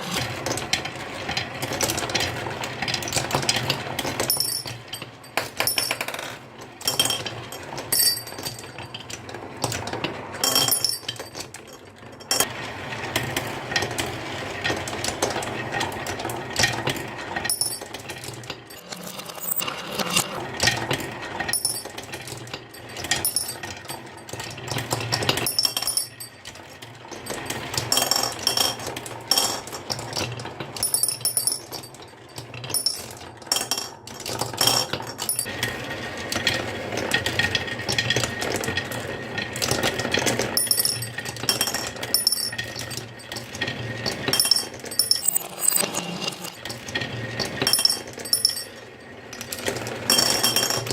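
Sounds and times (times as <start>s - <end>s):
marbles rolling down wooden run: 5.4s - 6.4s, 39.7s - 50.9s.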